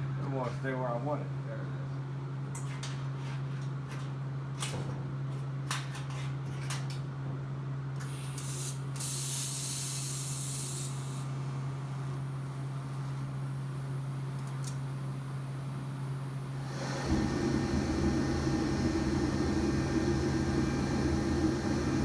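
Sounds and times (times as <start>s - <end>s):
welding arc hissing: 8.1s - 11.3s.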